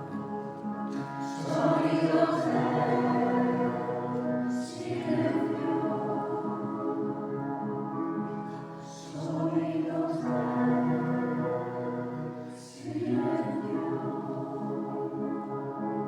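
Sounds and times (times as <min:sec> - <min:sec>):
choir singing sustained notes: 0:00.0 - 0:16.0.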